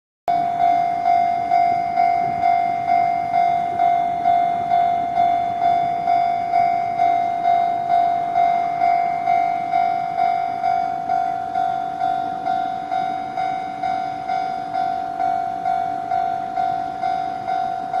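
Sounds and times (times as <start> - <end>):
level crossing bell clanging: 0.3 - 18.0.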